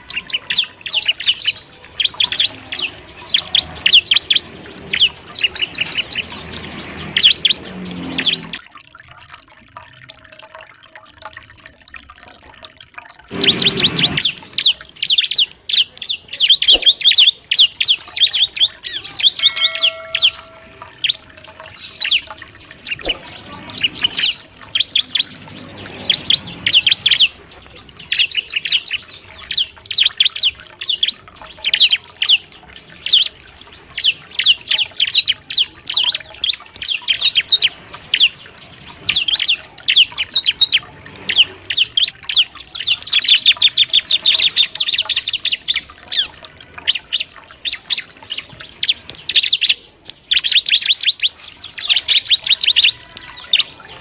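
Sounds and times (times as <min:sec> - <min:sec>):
bird chirping rapid high notes: 0:13.3 - 0:54.0.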